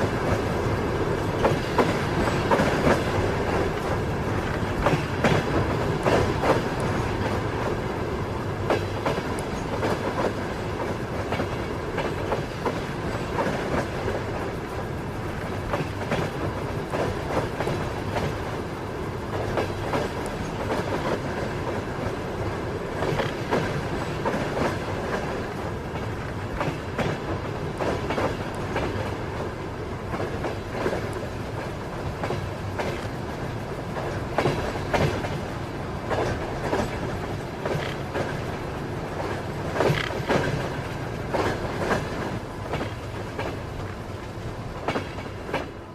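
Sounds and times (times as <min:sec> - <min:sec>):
moving train rumble: 0:00.0 - 0:45.9
train wheels clacking on rails: 0:00.0 - 0:45.9.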